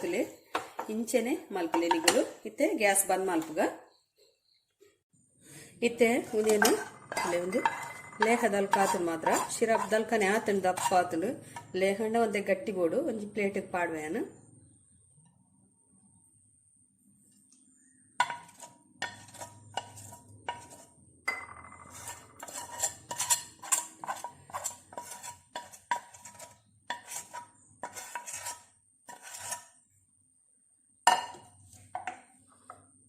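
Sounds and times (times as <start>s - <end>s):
spoon scraping and clinking on pan: 1.6s - 2.4s, 6.1s - 11.7s, 18.2s - 29.8s, 31.1s - 32.8s.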